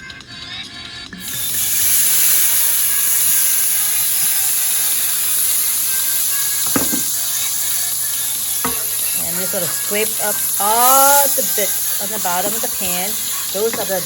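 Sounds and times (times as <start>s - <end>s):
wine sizzling in hot pan: 1.2s - 14.0s
utensil knocking against pan: 6.6s - 7.2s, 8.6s - 14.0s.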